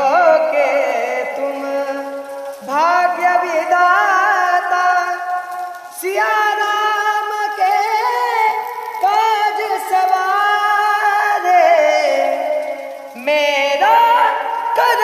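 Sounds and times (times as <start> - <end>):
high voice singing devotional song: 0.0 - 15.0.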